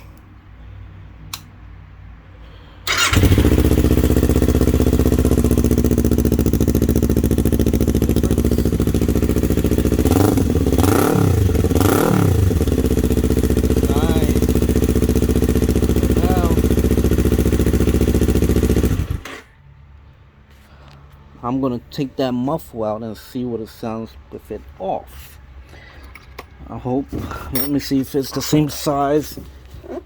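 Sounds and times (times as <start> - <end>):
engine throttle blips: 2.8 - 19.4
motorcycle engine idling: 2.9 - 19.3.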